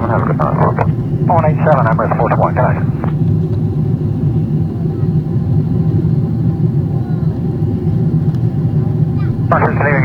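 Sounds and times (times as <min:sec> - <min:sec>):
air rushing along fuselage: 0:00.0 - 0:04.7
jet engines low rumble: 0:00.0 - 0:10.0.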